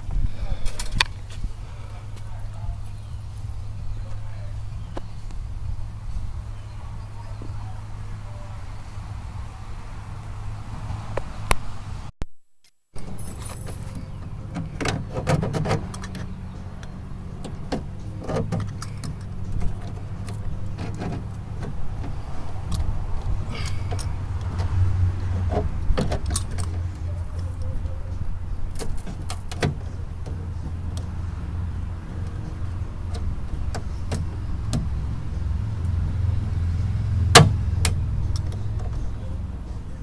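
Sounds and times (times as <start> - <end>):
metal tools clinking and knocking: 13.0 - 14.3.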